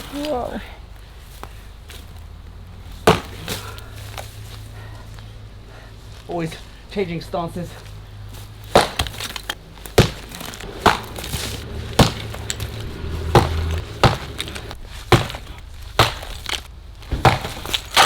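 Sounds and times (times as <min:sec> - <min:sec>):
brick cracking: 0:08.6 - 0:18.0
sledgehammer striking brick: 0:08.7 - 0:09.4, 0:10.0 - 0:18.0
brick bits clattering: 0:08.7 - 0:18.0.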